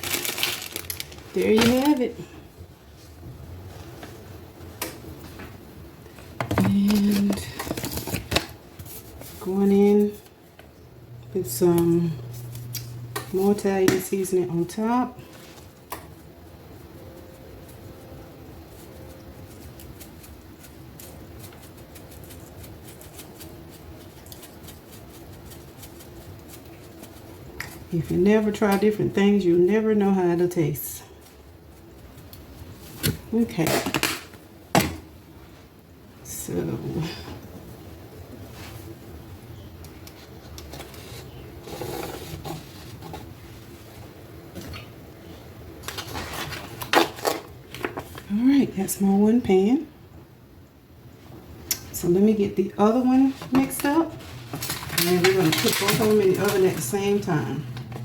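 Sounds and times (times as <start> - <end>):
steady low hum: 0.0 - 58.0
seasoning pattering onto food: 16.1 - 28.9.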